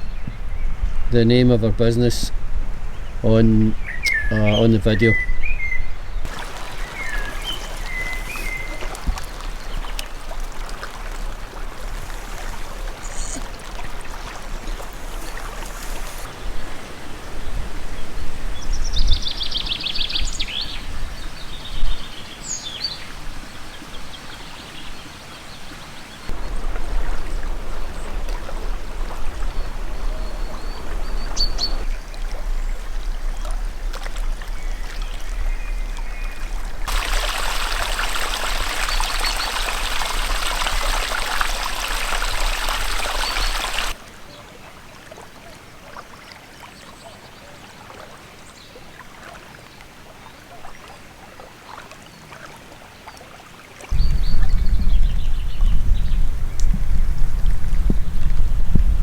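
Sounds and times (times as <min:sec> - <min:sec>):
birds singing: 0:02.9 - 0:16.6, 0:17.9 - 0:32.8, 0:34.6 - 0:44.0
bird chirps: 0:03.8 - 0:10.0, 0:26.3 - 0:31.9, 0:37.0 - 0:43.9
running water: 0:06.2 - 0:59.0.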